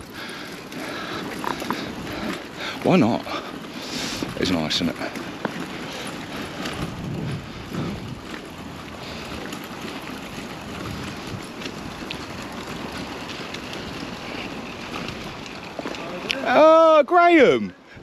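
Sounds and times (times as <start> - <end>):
wind on microphone: 6.6 - 9.3.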